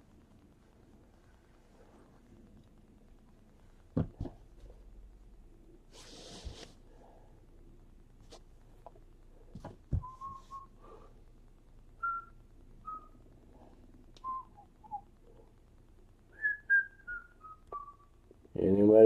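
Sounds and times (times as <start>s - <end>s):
person whistling: 10.0s - 10.8s, 12.0s - 13.2s, 14.2s - 15.1s, 16.3s - 18.1s.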